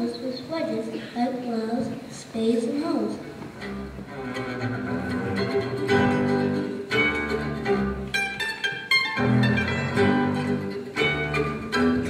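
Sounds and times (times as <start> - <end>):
instrumental music with struck notes: 3.5 - 12.0.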